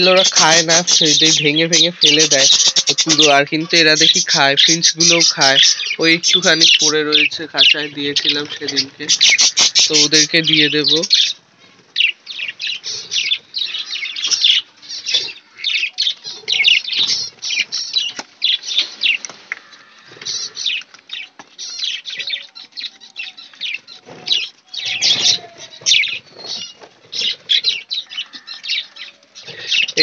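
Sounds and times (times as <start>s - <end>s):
birds chattering and chirping: 0.0s - 30.0s.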